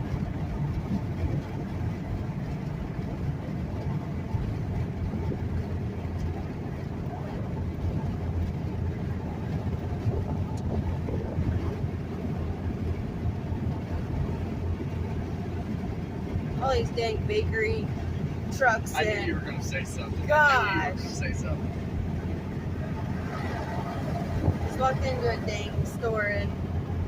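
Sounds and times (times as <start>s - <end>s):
road and engine rumble in car: 0.0s - 27.0s.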